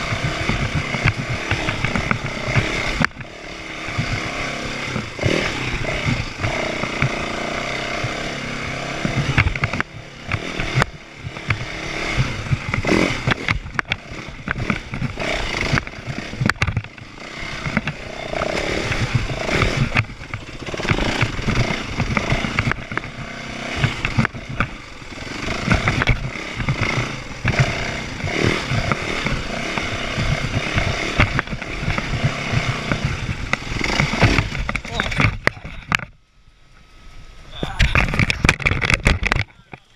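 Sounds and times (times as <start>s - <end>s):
rattling and clatter: 0.0s - 36.2s, 37.8s - 39.9s
small petrol engine revving: 0.0s - 36.2s, 36.9s - 39.9s.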